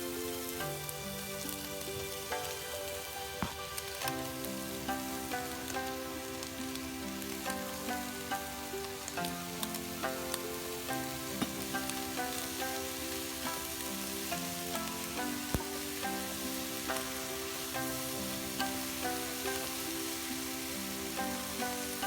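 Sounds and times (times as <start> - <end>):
background music with held notes: 0.0 - 22.0
food sizzling in a frying pan: 0.0 - 22.0.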